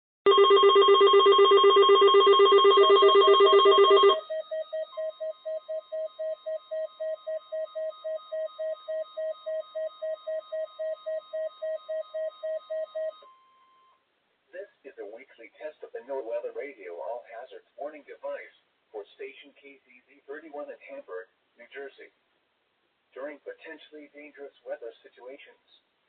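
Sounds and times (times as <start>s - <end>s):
faint steady tone: 1.1s - 14.7s
quiet beeps: 1.4s - 14.0s.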